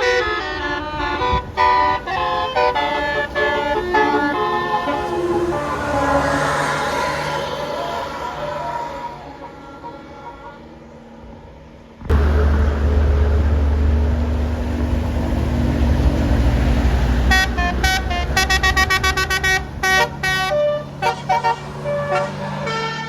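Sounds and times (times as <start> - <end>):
bus horn playing a tune: 0.0 - 11.2, 17.3 - 23.0
bus engine and road noise: 0.0 - 23.0.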